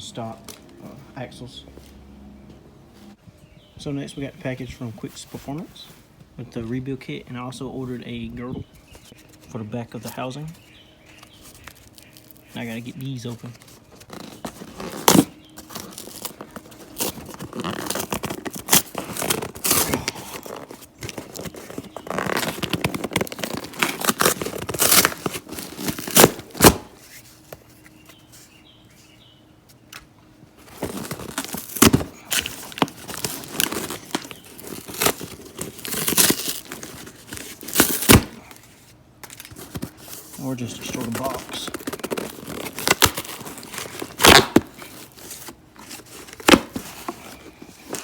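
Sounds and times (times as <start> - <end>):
cardboard and tape ripping: 13.4 - 27.6, 30.6 - 48.0.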